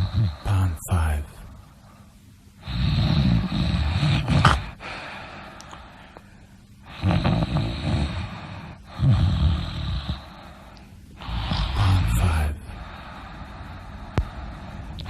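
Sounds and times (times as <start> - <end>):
person snoring: 0.0 - 1.2, 2.6 - 5.0, 6.8 - 15.0.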